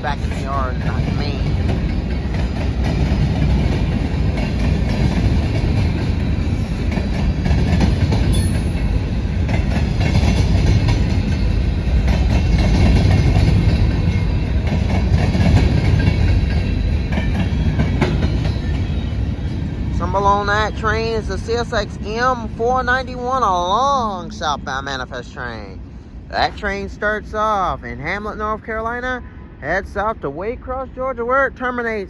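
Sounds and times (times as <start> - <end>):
wheels clacking over rail: 0.0 - 20.4
train rumbling past: 0.0 - 32.0.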